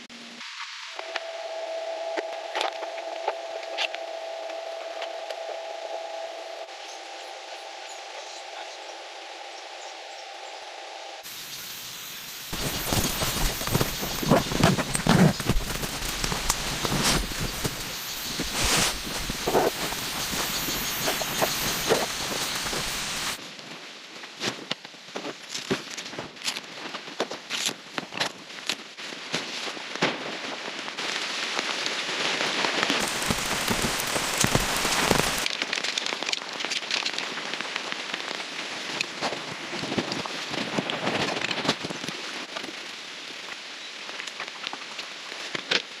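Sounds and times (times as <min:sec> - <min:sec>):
rain falling: 0:11.2 - 0:23.4, 0:30.6 - 0:45.5
raindrops tapping: 0:33.0 - 0:37.3.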